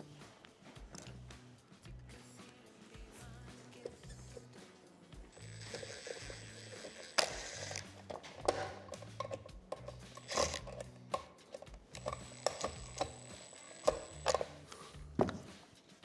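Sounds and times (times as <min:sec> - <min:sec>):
background music with bass: 0:00.0 - 0:15.5
mechanical clicks and knocks: 0:12.0 - 0:14.5.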